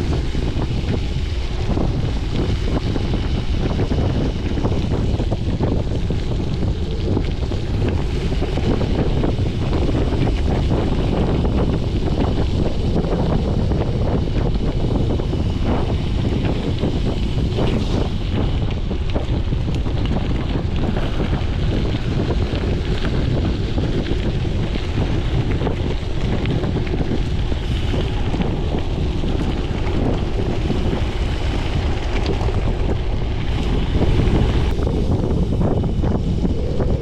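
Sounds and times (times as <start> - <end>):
tyres crunching over gravel: 0.0 - 37.0
wind buffeting microphone: 0.0 - 37.0.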